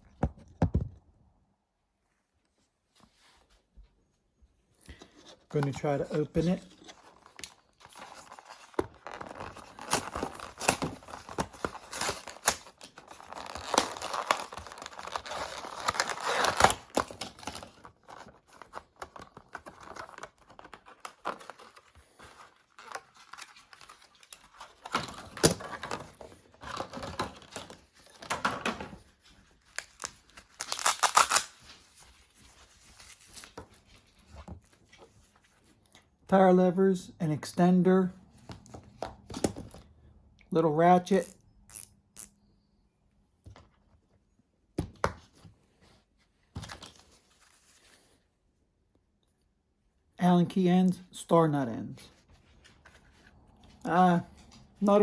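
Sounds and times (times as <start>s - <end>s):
packaging rustling and crinkling: 5.4s - 35.7s.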